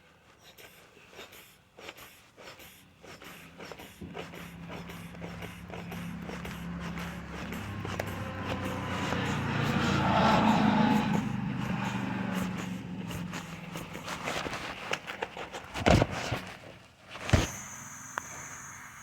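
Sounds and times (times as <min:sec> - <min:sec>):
vehicle engine running: 0:03.3 - 0:15.6.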